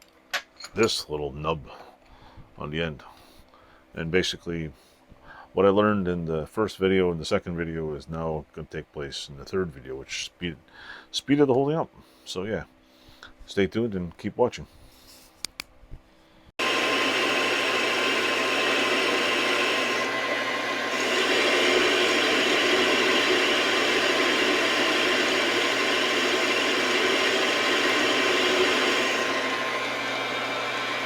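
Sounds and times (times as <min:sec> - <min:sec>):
metal lathe whirring: 0:16.6 - 0:31.0.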